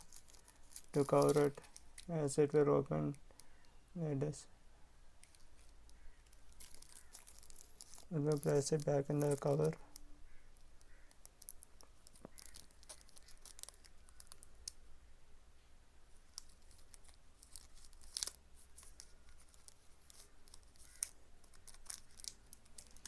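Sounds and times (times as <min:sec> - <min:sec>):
plastic packaging crinkling: 0:00.0 - 0:02.4, 0:05.2 - 0:14.8, 0:16.2 - 0:23.0.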